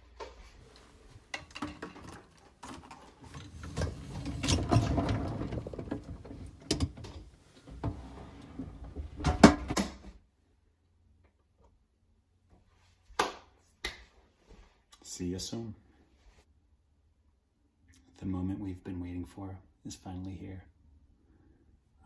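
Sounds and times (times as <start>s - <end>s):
dishes clicking and clattering: 1.3s - 7.3s
dishwasher rack rattling rumble: 1.5s - 9.9s
dishwasher door clunk: 3.7s - 10.0s.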